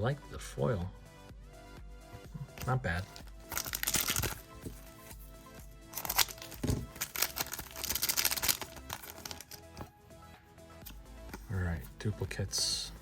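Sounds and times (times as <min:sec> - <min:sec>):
background music: 0:00.0 - 0:13.0
foil wrapper crinkling: 0:03.0 - 0:04.5, 0:05.9 - 0:09.9.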